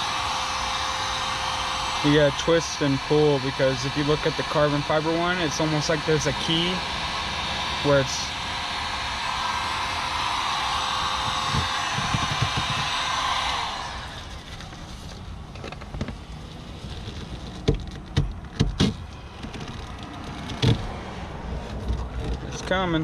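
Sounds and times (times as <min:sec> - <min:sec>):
heat gun blowing: 0:00.0 - 0:15.0, 0:18.8 - 0:22.4
sharp clicks and knocks: 0:11.3 - 0:12.9, 0:17.1 - 0:20.9, 0:21.6 - 0:22.8.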